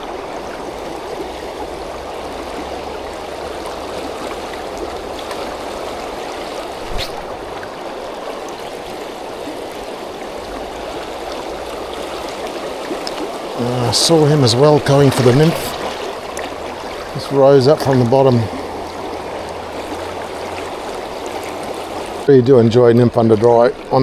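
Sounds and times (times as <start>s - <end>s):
river current rushing: 6.5s - 9.5s, 13.3s - 17.3s.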